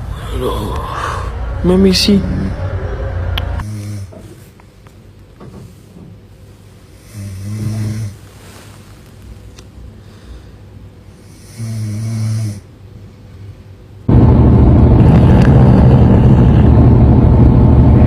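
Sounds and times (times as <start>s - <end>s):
loud steady rumble: 0.0s - 3.8s, 14.0s - 18.0s
man snoring: 3.6s - 4.2s, 7.0s - 8.2s, 11.2s - 12.7s, 15.0s - 16.9s.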